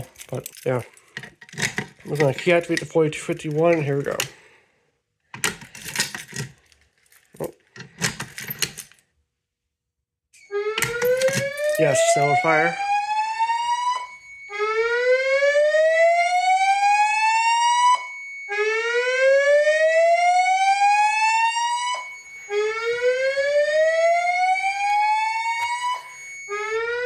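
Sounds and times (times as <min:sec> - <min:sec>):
faint steady high tone: 0:10.4 - 0:12.8, 0:13.6 - 0:15.6, 0:21.1 - 0:26.9
slow whoop alarm tone: 0:10.4 - 0:27.0.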